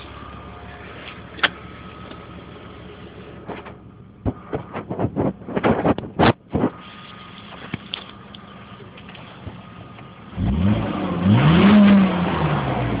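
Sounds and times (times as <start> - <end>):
car engine idling and revving: 0.0 - 13.0.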